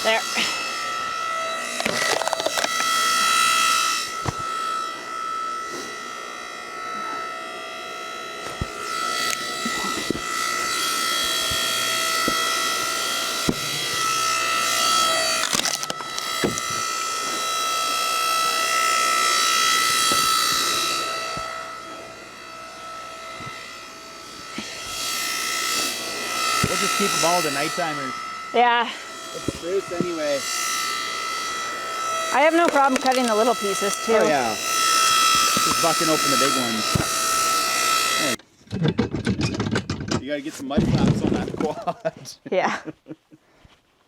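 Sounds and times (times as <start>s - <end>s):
log splitter whining: 0.0s - 42.0s
wood cracking and splitting: 15.2s - 16.8s.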